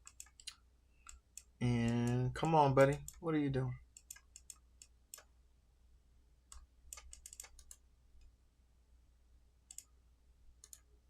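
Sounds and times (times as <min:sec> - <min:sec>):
low steady hum: 0:00.0 - 0:11.0
keyboard clicking: 0:06.5 - 0:07.8, 0:10.6 - 0:10.9.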